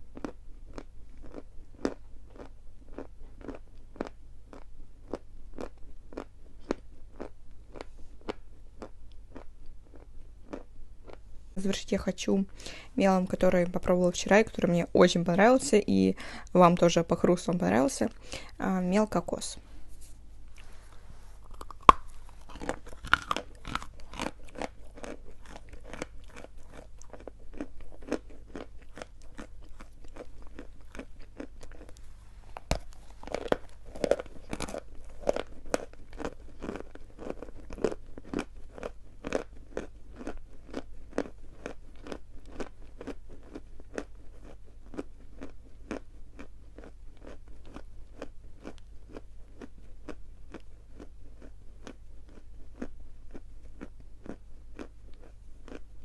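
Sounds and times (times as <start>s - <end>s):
person crunching chalk: 20.0s - 38.9s.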